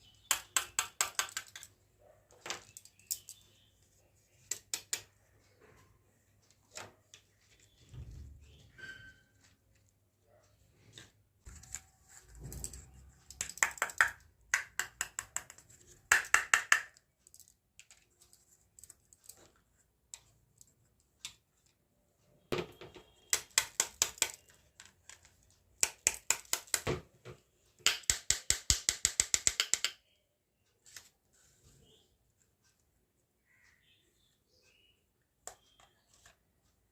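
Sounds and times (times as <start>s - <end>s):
plastic toy pieces clicking: 0.3s - 1.7s, 12.6s - 19.6s, 23.3s - 26.9s, 27.8s - 30.0s.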